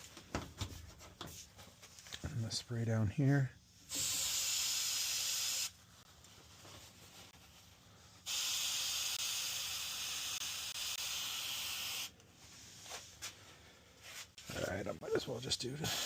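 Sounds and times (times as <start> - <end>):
spray can hissing: 3.9 - 5.8, 8.2 - 12.1.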